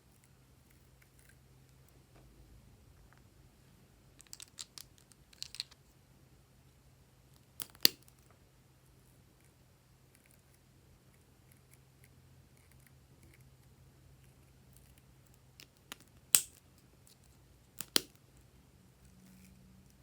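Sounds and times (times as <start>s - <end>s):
slime crackling and clicking: 17.8s - 18.1s.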